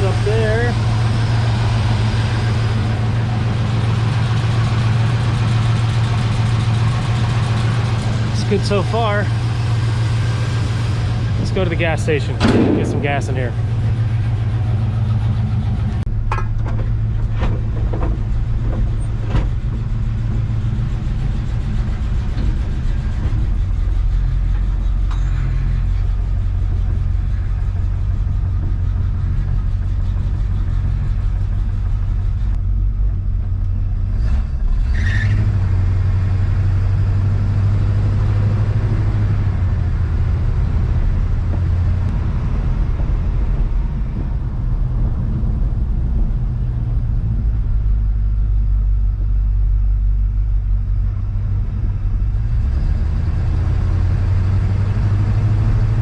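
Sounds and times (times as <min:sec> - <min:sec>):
pickup truck engine driving off: 0:00.0 - 0:32.4, 0:51.2 - 0:56.0.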